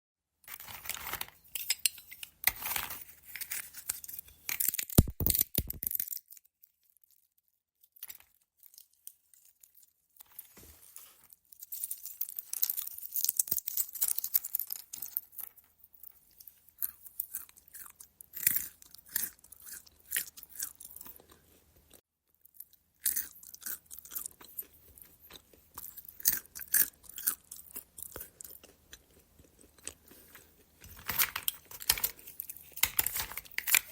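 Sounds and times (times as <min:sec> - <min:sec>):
walnut shells cracking: 0:04.5 - 0:06.2.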